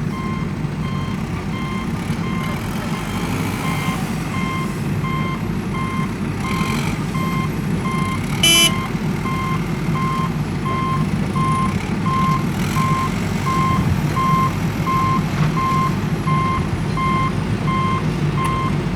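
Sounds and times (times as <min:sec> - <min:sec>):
reversing alarm beeping: 0:00.1 - 0:18.8
brief loud tone: 0:08.4 - 0:08.9.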